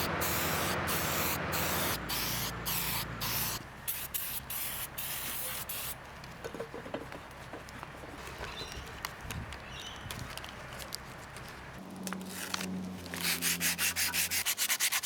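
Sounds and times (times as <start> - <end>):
handling clicks and rustling: 6.0 - 13.2
hand sanding metal: 13.1 - 15.0.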